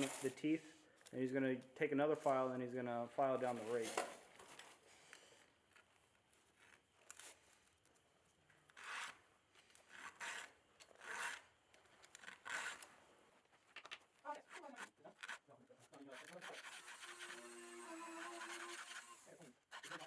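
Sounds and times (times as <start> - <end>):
file scraping chainsaw chain: 9.9 - 11.4, 14.5 - 20.0.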